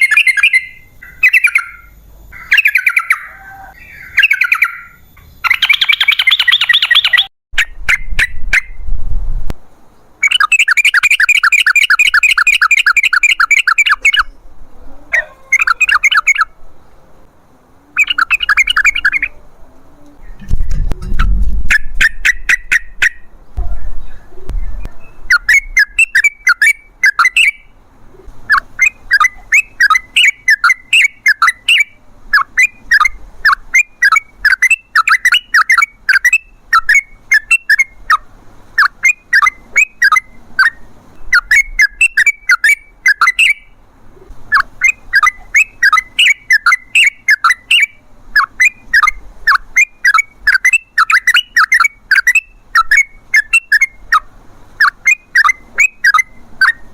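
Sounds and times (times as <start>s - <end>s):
bird singing chattering phrases: 0.0s - 7.3s, 10.0s - 20.4s, 21.8s - 56.9s.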